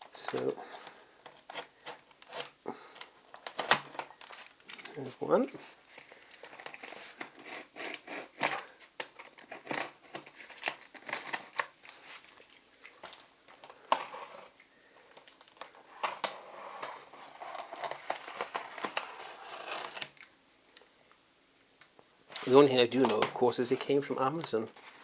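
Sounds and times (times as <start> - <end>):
cardboard crinkling and crackling: 0.0 - 20.3, 22.3 - 25.0
packing tape peeling: 1.2 - 4.9, 6.5 - 12.3.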